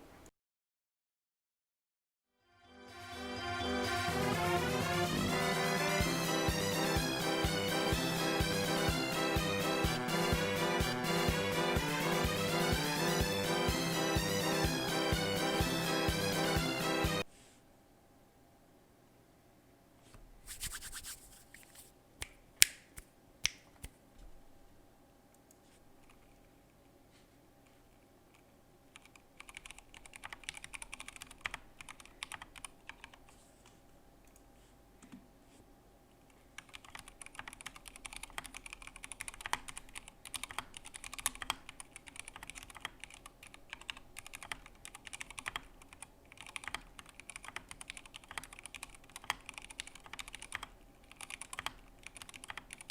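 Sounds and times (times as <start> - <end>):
mechanical keyboard typing: 28.9 - 33.2, 36.6 - 52.9.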